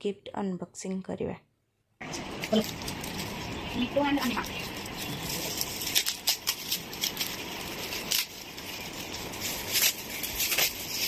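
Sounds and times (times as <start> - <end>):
packaging crinkling: 2.1 - 11.0
small objects clinking: 2.3 - 11.0.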